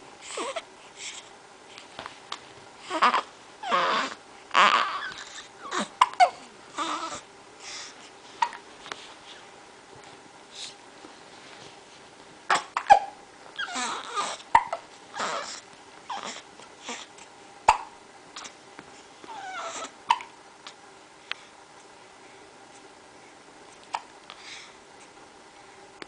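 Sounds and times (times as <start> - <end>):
baby grunting: 2.9 - 7.2, 12.5 - 14.4, 15.1 - 17.1
baby hiccuping: 12.5 - 13.2, 17.7 - 18.0, 20.1 - 20.3.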